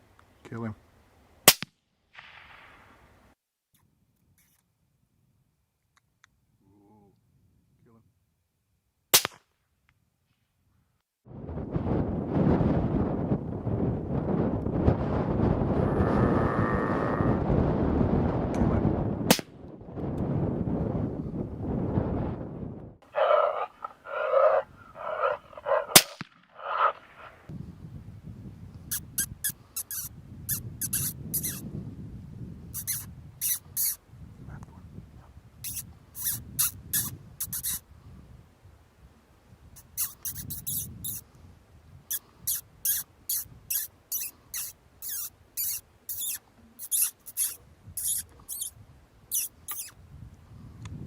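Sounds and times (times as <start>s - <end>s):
rifle shot: 1.4s - 3.0s, 9.1s - 9.5s, 19.3s - 19.6s, 25.9s - 27.3s
coyote barks: 23.0s - 27.5s, 32.8s - 37.8s, 39.8s - 41.2s, 42.5s - 48.7s, 49.3s - 49.9s
short high squeaks: 28.9s - 31.6s, 32.8s - 34.0s, 35.6s - 37.8s, 39.8s - 41.2s, 42.1s - 50.0s.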